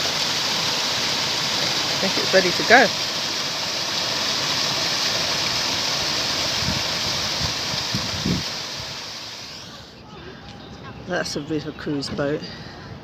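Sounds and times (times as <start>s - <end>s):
water rushing: 0.0s - 9.8s.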